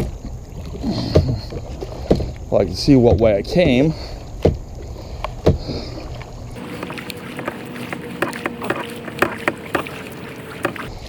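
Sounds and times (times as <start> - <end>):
paddle splashing and knocking hull: 5.4 - 11.0
steady hum: 6.6 - 10.9.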